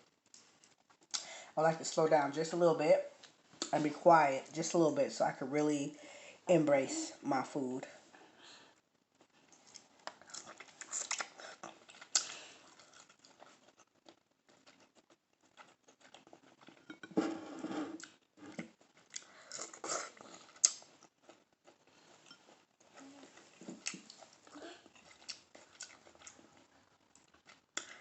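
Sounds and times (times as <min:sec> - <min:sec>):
close chewing and mouth sounds: 0:00.0 - 0:02.0, 0:08.1 - 0:17.1, 0:18.0 - 0:28.0.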